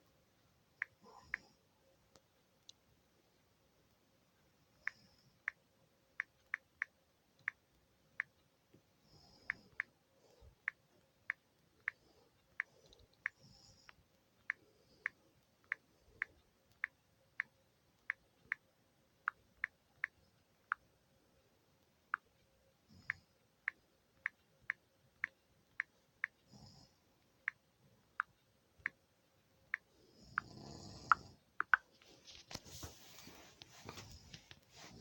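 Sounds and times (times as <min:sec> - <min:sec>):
faint soft hissing: 0:30.2 - 0:35.0.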